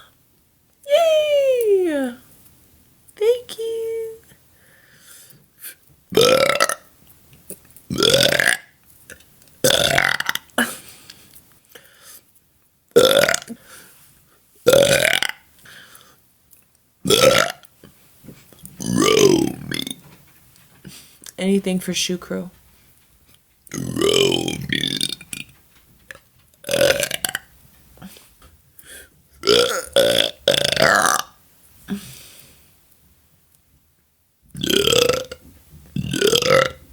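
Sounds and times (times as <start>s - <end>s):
woman belching: 6.1s - 6.8s, 7.9s - 8.6s, 9.6s - 10.7s, 13.0s - 13.6s, 14.7s - 15.4s, 17.1s - 17.6s, 18.8s - 19.9s, 23.7s - 25.2s, 29.4s - 31.3s, 34.6s - 35.4s, 36.0s - 36.8s
woman burping: 6.2s - 6.8s, 9.6s - 10.8s, 13.0s - 13.6s.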